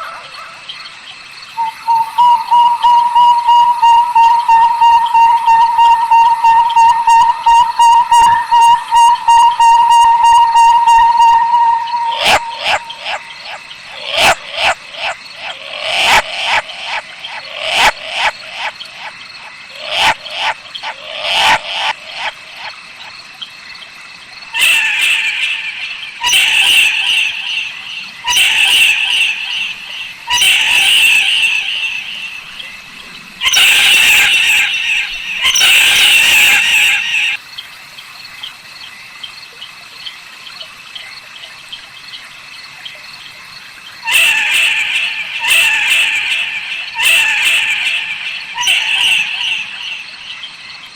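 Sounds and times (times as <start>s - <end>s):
owl rasping calls: 1.6s - 19.1s, 24.6s - 37.4s, 44.0s - 50.1s.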